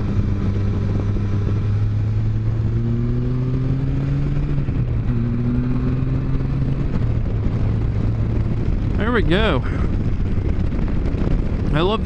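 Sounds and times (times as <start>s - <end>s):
engine pulling uphill under load: 0.0s - 12.0s
wind rush: 0.0s - 12.0s.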